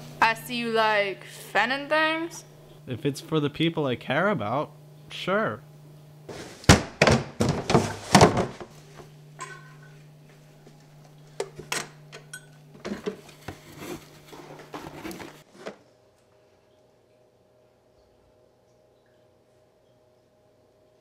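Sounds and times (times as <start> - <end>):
low steady hum: 0.0 - 21.0
objects knocking and clattering: 6.3 - 8.8, 9.4 - 10.0.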